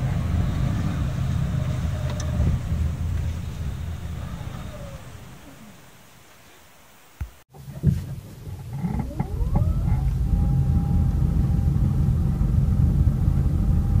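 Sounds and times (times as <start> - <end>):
rising whine: 0.0 - 6.2, 8.6 - 14.0
car driving rumble: 0.0 - 6.5, 7.6 - 14.0
creaking grinding noise: 8.3 - 12.0.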